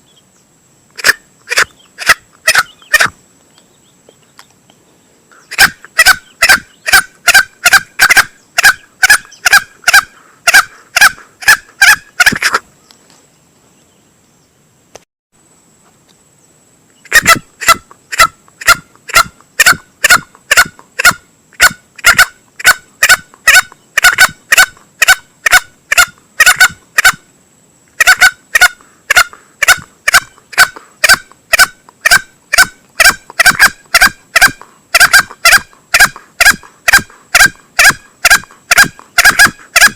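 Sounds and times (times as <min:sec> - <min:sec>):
junglefowl clucking calls: 0:01.0 - 0:03.2, 0:05.3 - 0:12.7, 0:17.0 - 0:27.2, 0:28.0 - 0:39.9.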